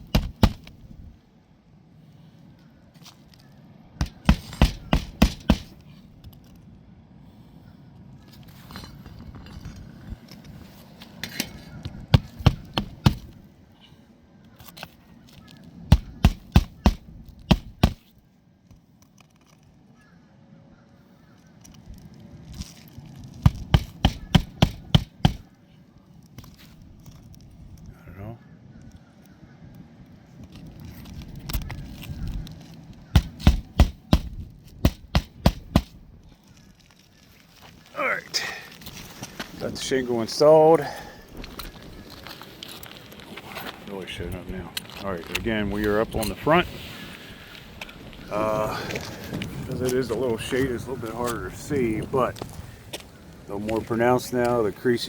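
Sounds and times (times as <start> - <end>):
hammer striking roofing nails: 0.0 - 0.8, 4.0 - 5.8, 12.1 - 13.4, 15.9 - 18.1, 23.4 - 25.5, 33.1 - 36.0.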